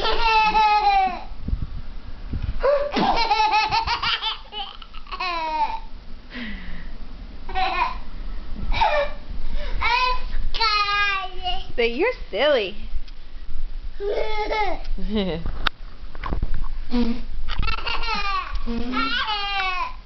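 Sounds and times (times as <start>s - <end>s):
small child laughing: 0.0s - 1.3s, 2.6s - 5.8s, 7.5s - 8.0s, 14.0s - 15.4s, 17.0s - 20.0s.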